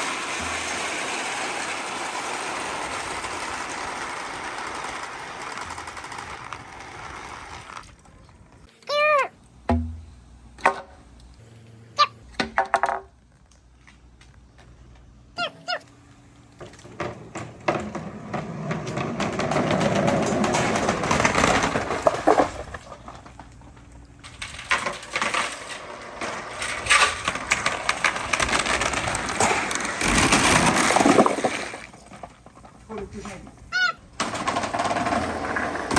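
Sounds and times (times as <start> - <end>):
marbles clattering through marble run: 0.0 - 7.8, 18.8 - 22.7, 24.4 - 32.1, 33.8 - 35.9.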